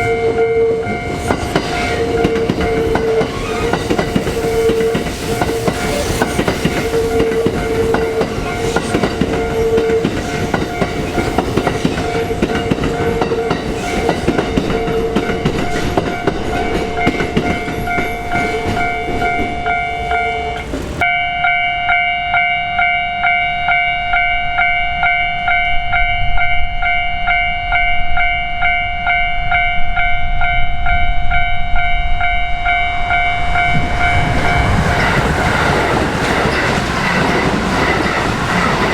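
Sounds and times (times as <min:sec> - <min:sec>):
level-crossing warning bells ringing: 0:00.0 - 0:38.9
train wheel clatter: 0:01.0 - 0:19.8, 0:33.6 - 0:38.9.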